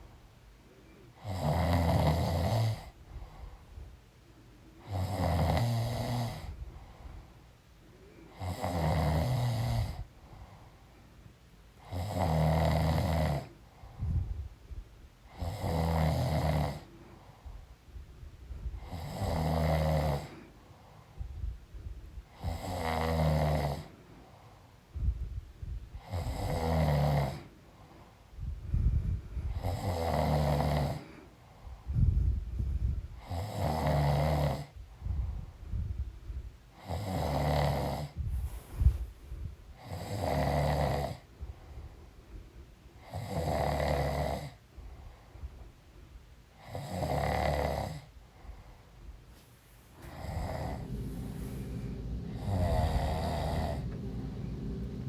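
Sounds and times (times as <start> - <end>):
woman snoring: 1.2 - 2.8, 29.6 - 31.0, 50.0 - 55.0.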